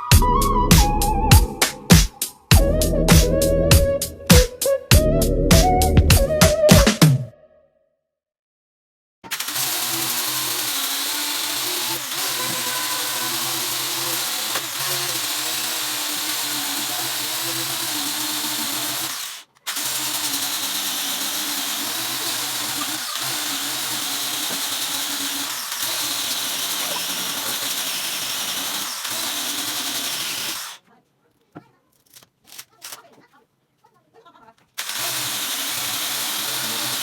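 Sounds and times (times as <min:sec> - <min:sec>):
electric power tool running: 0:09.3 - 0:30.8, 0:34.8 - 0:37.0.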